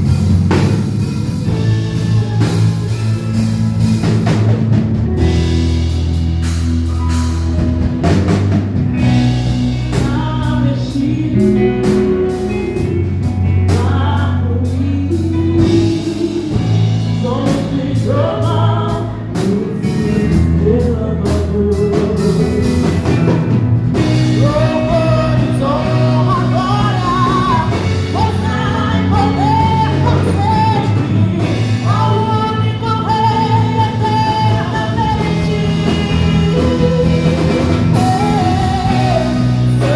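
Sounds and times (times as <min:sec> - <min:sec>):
band with drums bass and guitar: 0:00.0 - 0:39.9
voices singing gospel: 0:09.0 - 0:39.9.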